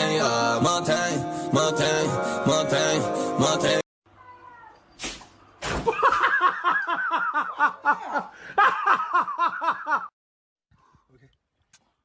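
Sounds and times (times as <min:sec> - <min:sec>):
person laughing hard: 0:05.9 - 0:10.1.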